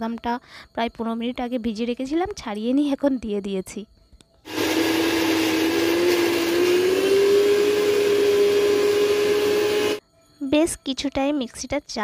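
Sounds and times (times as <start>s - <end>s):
mixer grinder motor running: 4.5s - 10.0s.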